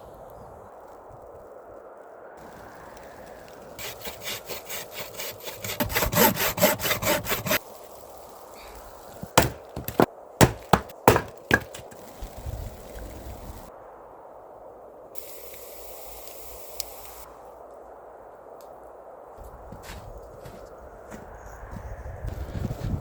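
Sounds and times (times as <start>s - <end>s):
hand saw cutting wood: 3.8s - 7.6s, 9.2s - 12.0s
sharp cracks: 9.2s - 12.1s.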